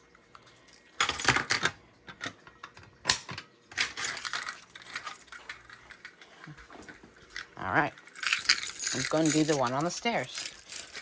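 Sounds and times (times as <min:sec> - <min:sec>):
small hard objects rattling: 0:07.2 - 0:11.0.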